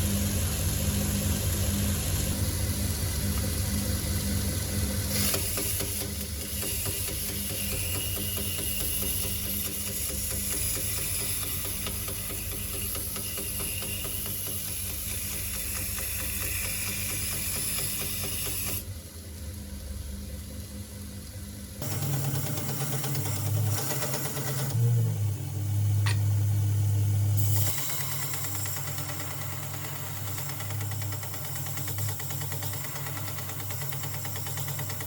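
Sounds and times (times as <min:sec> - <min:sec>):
belt grinder motor running: 0:21.8 - 0:35.0.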